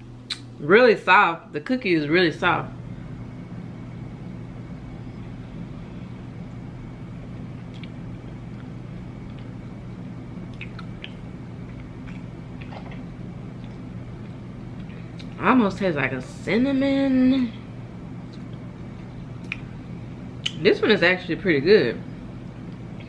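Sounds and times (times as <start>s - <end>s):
low hum: 0.0s - 23.0s
person chewing cookie: 7.6s - 9.6s, 10.5s - 15.4s
mouth clicks: 10.5s - 11.2s.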